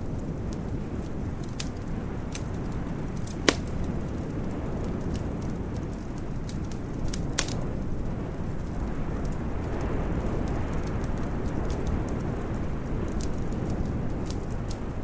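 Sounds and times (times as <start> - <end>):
wood fire crackling: 0.0 - 15.0
sharp pop of fire: 3.2 - 4.0.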